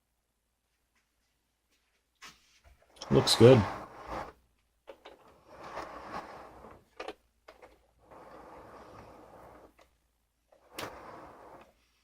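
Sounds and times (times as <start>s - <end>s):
soft rustling: 0.6s - 4.7s.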